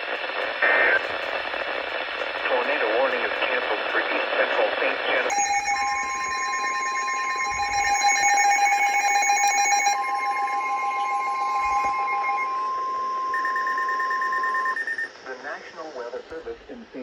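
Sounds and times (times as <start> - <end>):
higher beeping tone: 5.3 - 15.1
lower electronic tone: 5.3 - 15.1
loud steady electronic tone: 5.3 - 15.2.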